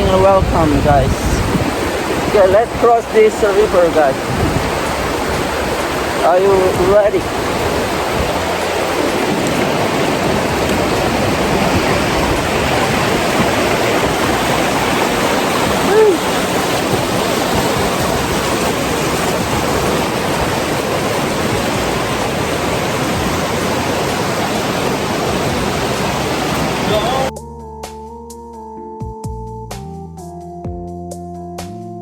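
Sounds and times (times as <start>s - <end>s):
river water rushing: 0.0s - 27.3s.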